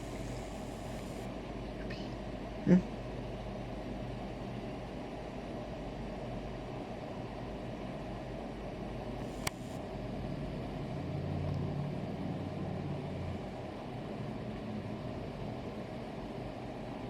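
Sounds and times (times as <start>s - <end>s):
sharp click: 9.2s - 9.8s.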